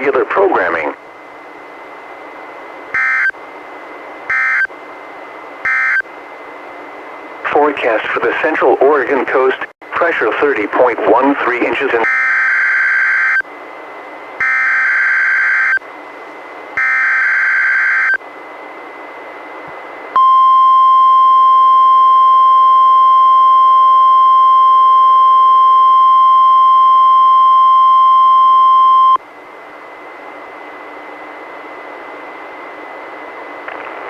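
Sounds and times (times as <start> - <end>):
radio hiss: 0.0 - 1.0, 7.4 - 12.1, 33.5 - 34.0
steady warning alarm tone: 2.9 - 3.4, 4.3 - 4.8, 5.6 - 6.0, 11.7 - 13.5, 14.4 - 15.8, 16.8 - 18.2, 20.2 - 29.2.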